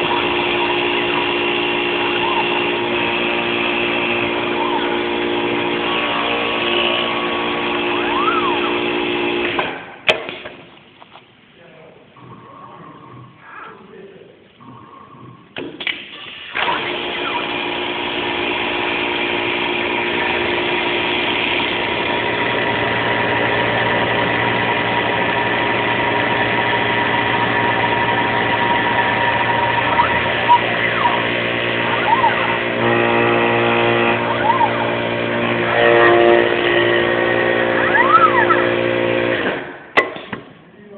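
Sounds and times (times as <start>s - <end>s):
lathe motor hum and whine: 0.0s - 9.6s, 16.6s - 39.6s.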